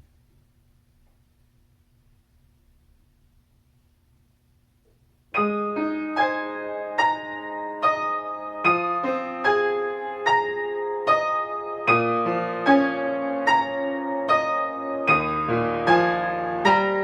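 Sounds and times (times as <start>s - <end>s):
electronic keyboard piano accompaniment: 5.4s - 17.0s.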